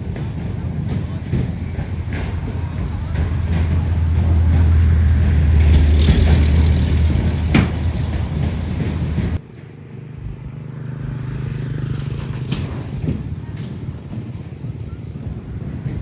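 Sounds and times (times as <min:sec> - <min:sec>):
higher-pitched engine hum: 0:00.0 - 0:16.0.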